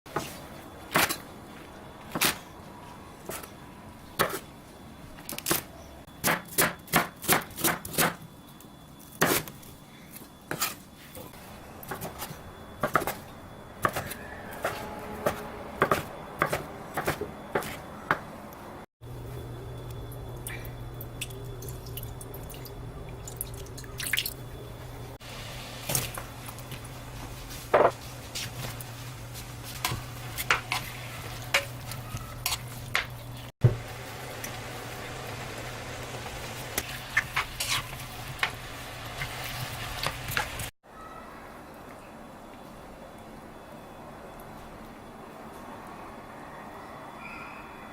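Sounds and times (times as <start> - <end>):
steady low hum: 9.8 - 37.1.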